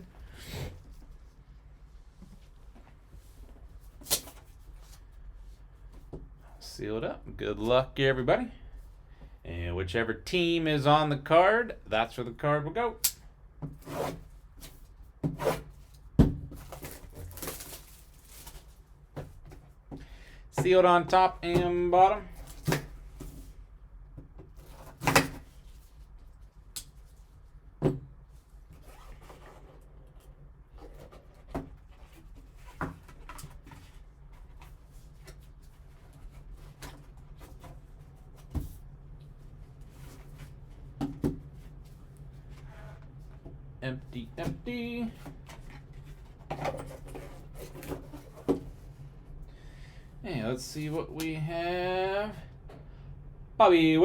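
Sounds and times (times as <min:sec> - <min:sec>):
low steady hum: 0:00.0 - 0:54.0
packaging rustling and scraping: 0:16.6 - 0:19.0, 0:45.2 - 0:48.7.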